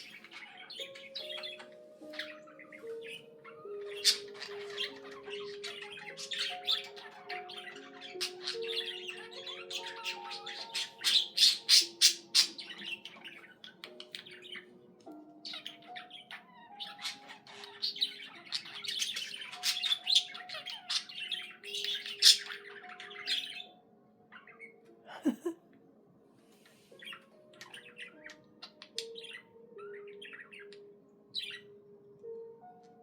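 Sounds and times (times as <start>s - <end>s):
budgerigar chattering and warbling: 0.0s - 14.7s, 15.4s - 23.7s.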